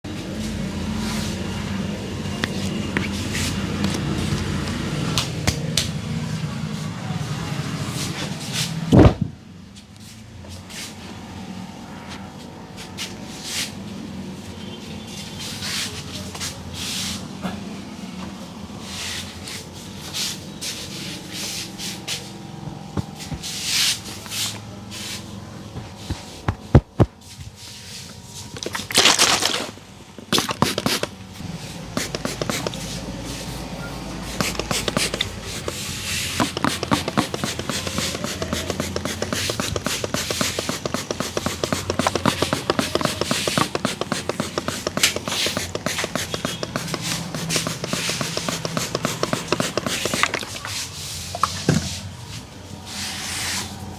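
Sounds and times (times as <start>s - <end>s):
hands rubbing and slapping head: 30.3s - 31.1s, 32.0s - 33.0s, 34.3s - 51.6s
fast rhythmic patting: 32.0s - 32.8s, 34.3s - 50.6s.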